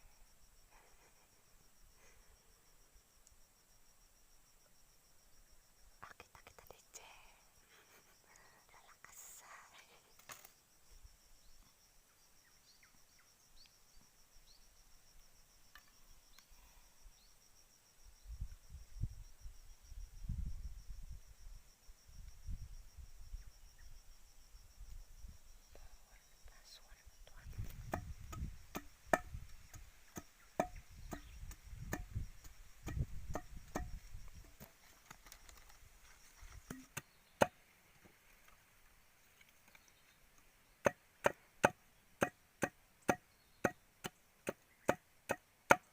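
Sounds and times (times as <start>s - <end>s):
insect chirping trill: 0.0s - 45.9s.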